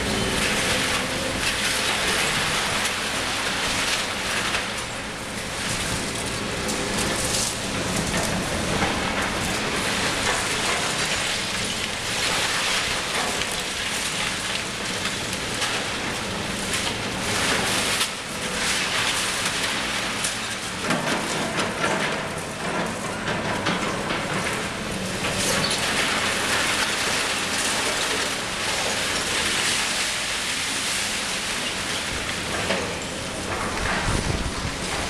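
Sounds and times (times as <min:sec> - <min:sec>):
diesel engine running: 0:00.0 - 0:35.0.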